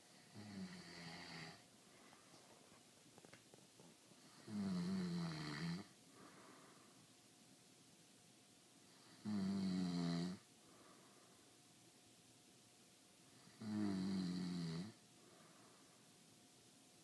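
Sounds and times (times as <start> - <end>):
man snoring: 0.2 - 1.6, 4.3 - 5.9, 9.0 - 10.4, 13.4 - 15.0.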